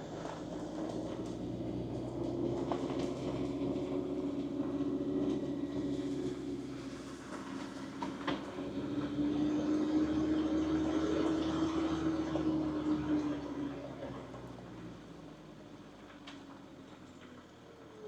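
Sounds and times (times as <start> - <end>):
vehicle engine drone: 0.0 - 18.0.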